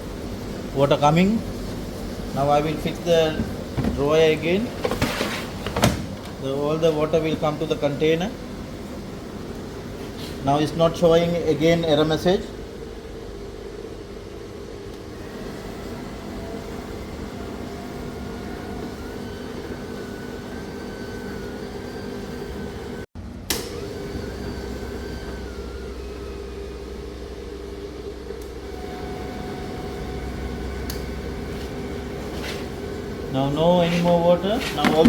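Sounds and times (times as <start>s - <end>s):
tumble dryer running: 0.0s - 13.0s, 22.6s - 35.0s
drain pump pumping water: 33.8s - 35.0s.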